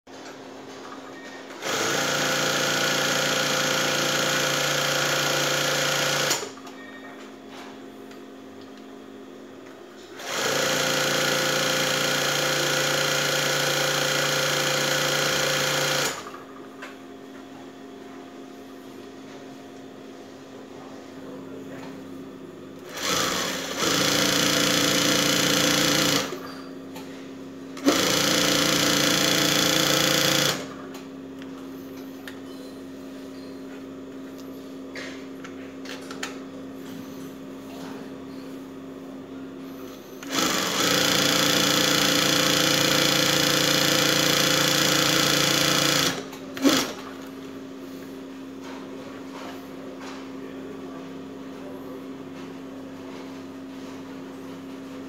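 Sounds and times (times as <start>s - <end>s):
sewing machine stitching: 1.6s - 6.6s, 10.2s - 16.4s, 22.8s - 26.5s, 27.8s - 30.8s, 40.2s - 47.2s.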